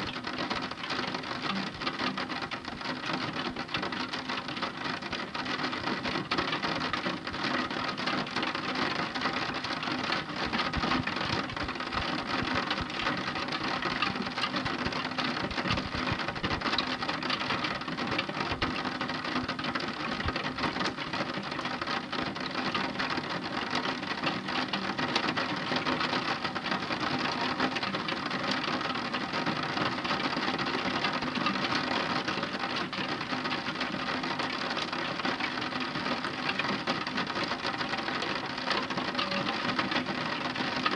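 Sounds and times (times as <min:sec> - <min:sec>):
heavy rain falling: 0:00.1 - 0:40.9.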